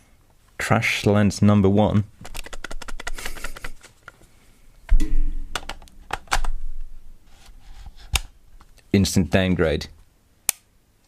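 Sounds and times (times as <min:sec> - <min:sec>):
heavier thump: 0:04.9 - 0:07.2.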